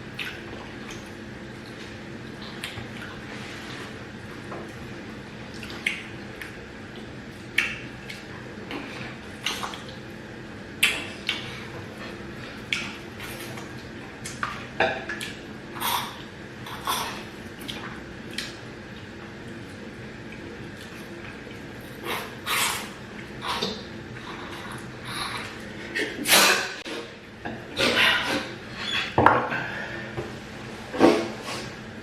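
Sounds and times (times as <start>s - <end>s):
steady low hum: 0.0s - 32.0s
wet squelchy eating sounds: 10.8s - 27.0s.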